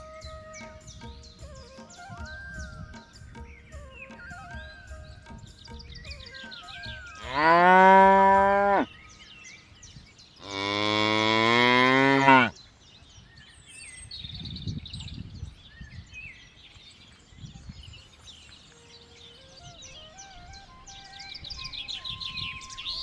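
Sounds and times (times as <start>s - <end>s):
faint birds chirping: 0.0s - 23.0s
water buffalo mooing: 7.2s - 8.9s, 10.4s - 12.5s.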